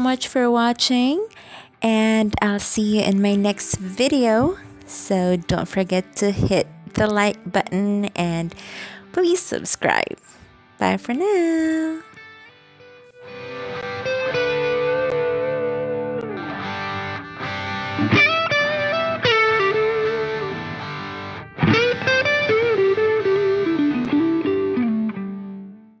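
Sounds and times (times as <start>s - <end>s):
electric guitar melody: 0.0s - 26.0s
sustained chords: 13.2s - 25.3s.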